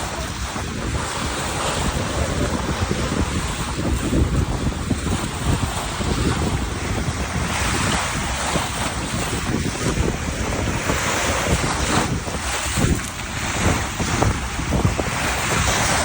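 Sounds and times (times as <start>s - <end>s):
waves breaking on shore: 0.0s - 16.0s
wind buffeting microphone: 0.0s - 16.0s.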